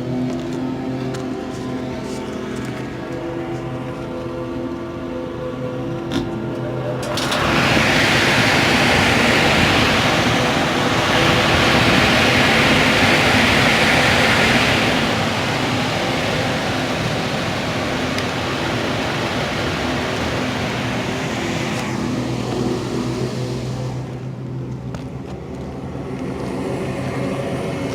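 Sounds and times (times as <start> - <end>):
furnace motor hum: 0.0 - 24.6
furnace burner rushing: 7.0 - 24.4.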